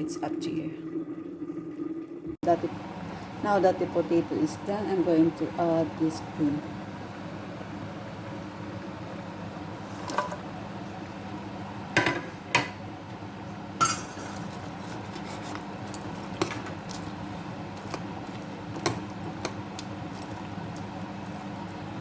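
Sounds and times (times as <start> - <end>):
utensils clinking against pot: 13.8 - 15.6.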